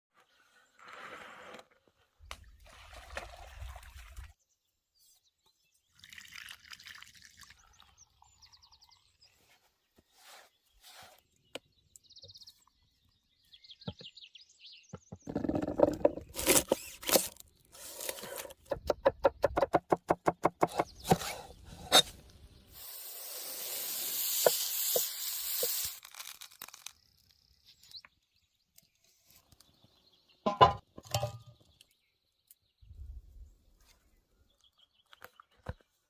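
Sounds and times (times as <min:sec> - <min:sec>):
hiss: 0:22.7 - 0:26.0.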